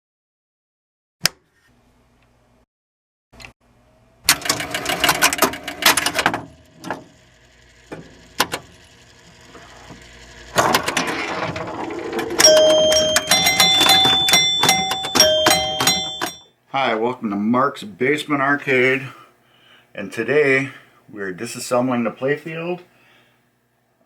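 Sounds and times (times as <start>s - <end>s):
pinball machine clicking and ratcheting: 4.3s - 7.2s, 10.5s - 16.4s.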